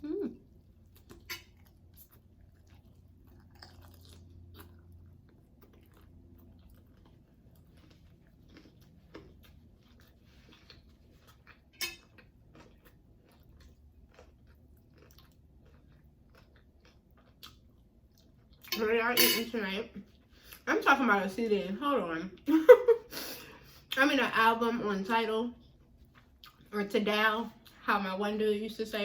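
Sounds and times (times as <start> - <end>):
person chewing food: 0.0 - 18.7, 25.6 - 26.7.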